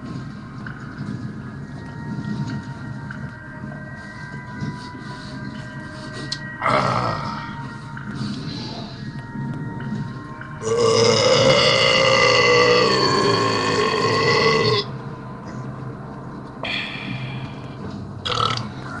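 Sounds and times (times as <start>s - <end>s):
man burping: 10.6s - 14.9s, 18.2s - 18.7s.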